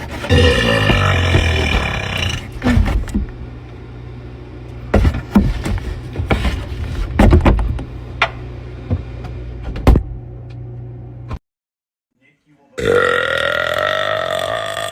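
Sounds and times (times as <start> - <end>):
steady low hum: 0.0 - 11.4
woman belching: 0.3 - 2.5, 12.8 - 14.9.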